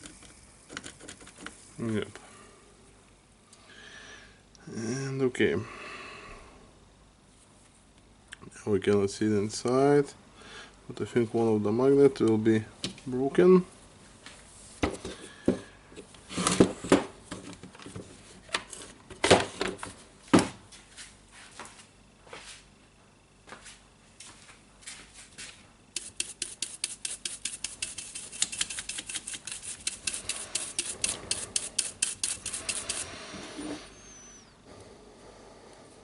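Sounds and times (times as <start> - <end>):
fast run of small clicks: 26.0 - 33.0.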